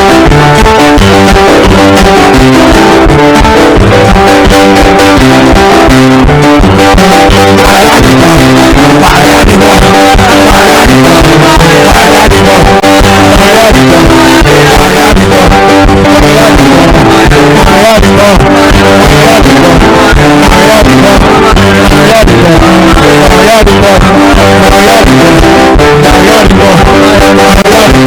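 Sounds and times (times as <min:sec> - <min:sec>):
live band music: 0:00.0 - 0:28.0
faint singing: 0:06.9 - 0:28.0.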